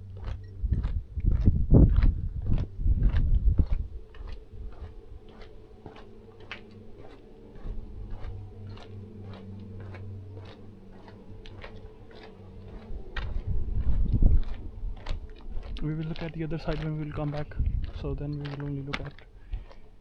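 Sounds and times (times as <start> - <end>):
faint low hum: 0.0 - 20.0
footsteps on a path: 0.0 - 20.0.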